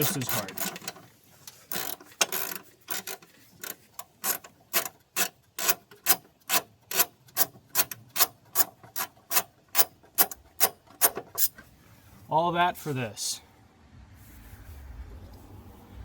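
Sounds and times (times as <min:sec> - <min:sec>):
ratchet wrench clicking: 0:00.0 - 0:11.6.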